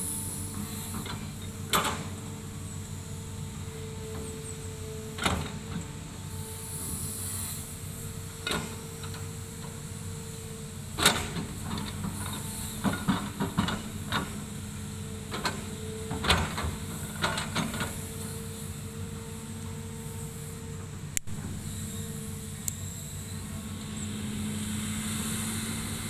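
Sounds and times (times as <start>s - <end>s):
excavator diesel engine whining: 0.0s - 26.0s.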